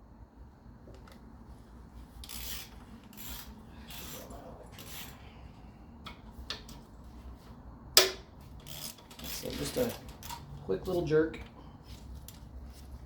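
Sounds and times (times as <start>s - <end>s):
wrench ratchet strokes: 2.2s - 5.2s, 8.5s - 10.6s.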